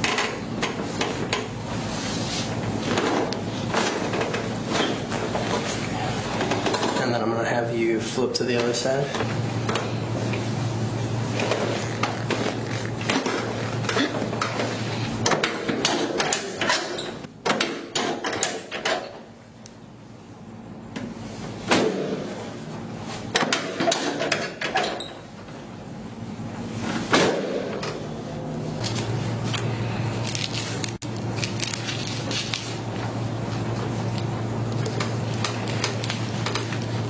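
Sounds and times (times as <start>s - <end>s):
table creaking: 11.3s - 15.0s.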